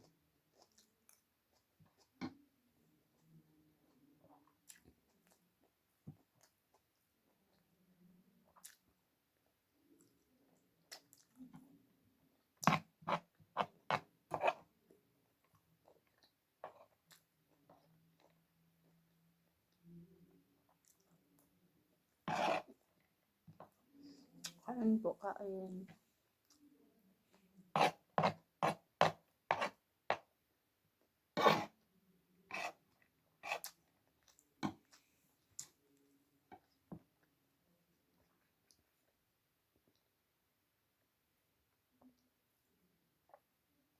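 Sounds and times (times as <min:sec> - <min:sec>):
chewing crunchy food: 0:00.0 - 0:02.4, 0:03.2 - 0:07.6, 0:08.4 - 0:09.0, 0:09.9 - 0:11.8, 0:15.4 - 0:19.1.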